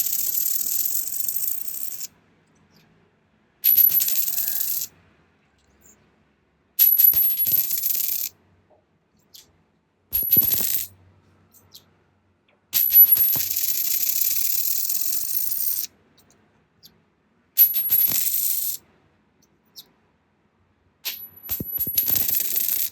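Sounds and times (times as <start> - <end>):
coin clinking on hard surface: 0.0 - 2.1, 3.6 - 4.9, 6.8 - 8.3, 10.1 - 11.8, 12.8 - 15.9, 17.6 - 18.8, 21.1 - 22.9.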